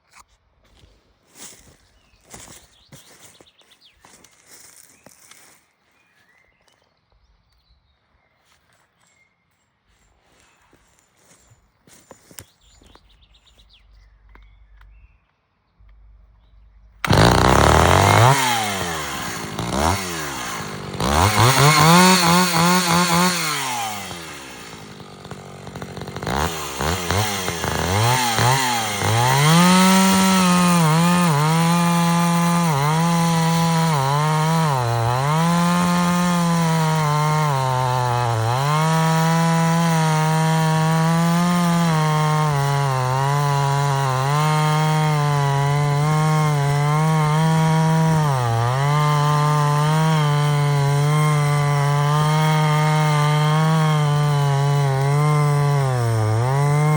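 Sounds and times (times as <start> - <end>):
chainsaw engine revving: 16.9 - 56.9.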